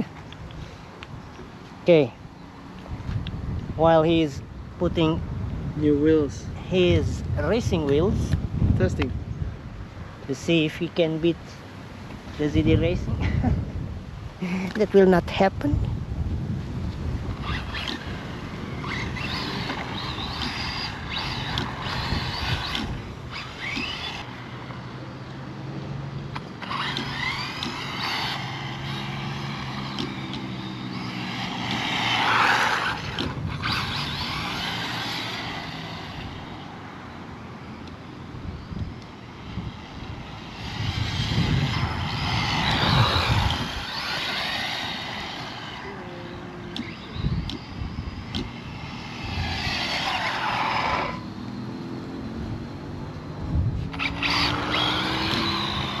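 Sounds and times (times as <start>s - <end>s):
electric motors whining: 17.3s - 56.0s.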